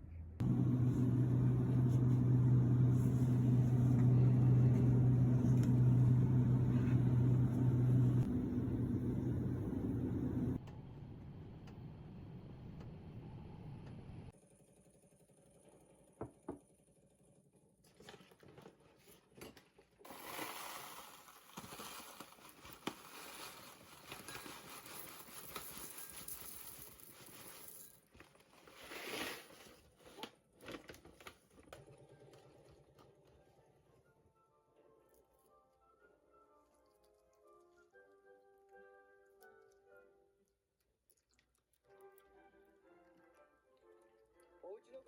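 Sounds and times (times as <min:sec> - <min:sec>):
objects being handled: 0:20.1 - 0:31.6.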